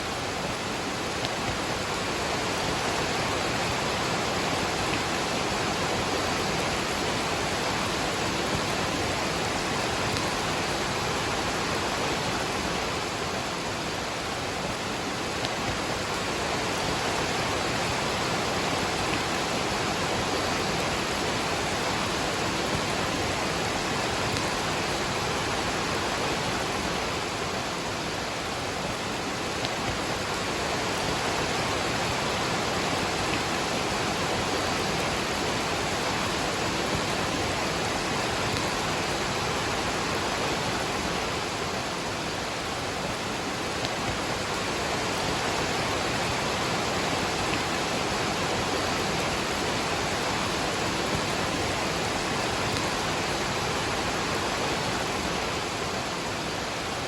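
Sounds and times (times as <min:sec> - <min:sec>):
rain: 0:00.0 - 0:57.0
waterfall: 0:00.0 - 0:57.0.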